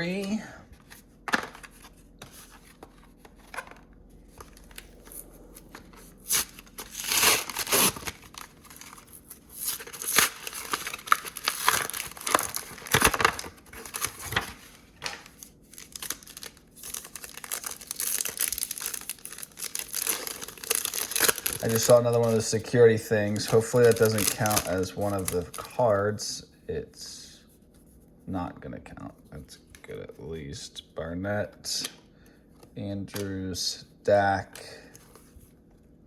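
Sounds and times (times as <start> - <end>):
foil packs crinkling and ripping: 5.8 - 26.0
plastic packaging tearing: 6.2 - 22.5, 23.3 - 25.8.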